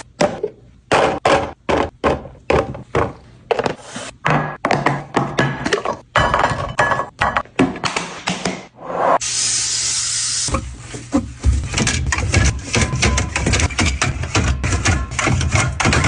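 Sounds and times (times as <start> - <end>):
containers thunking in a refrigerator: 0.1 - 8.0.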